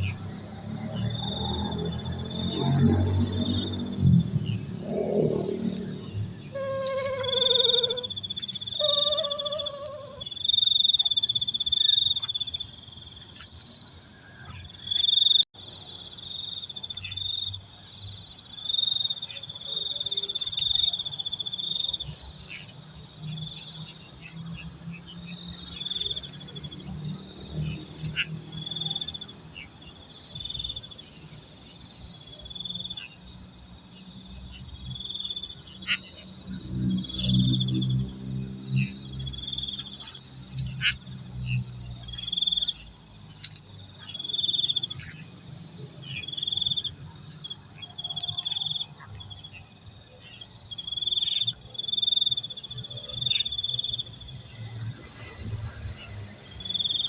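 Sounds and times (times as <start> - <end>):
crickets and insects chirping: 0.0 - 57.0
high-pitched insect buzz: 5.1 - 11.0
short pitched calls: 6.4 - 10.4.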